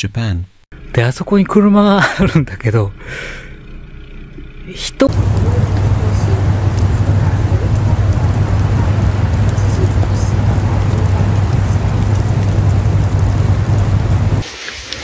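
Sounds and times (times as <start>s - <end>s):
storm wind buffeting microphone: 5.1s - 14.4s.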